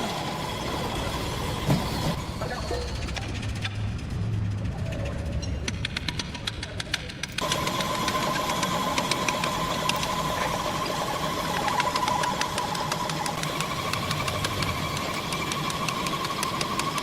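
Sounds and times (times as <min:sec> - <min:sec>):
rapid irregular clicks and knocks: 0:05.4 - 0:17.0
machine motor humming: 0:07.4 - 0:17.0.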